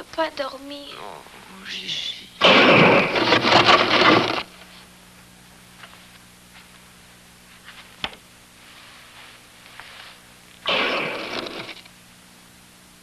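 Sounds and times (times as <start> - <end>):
steady low hum: 0.0 - 13.0
faint soft rustles: 8.6 - 10.3.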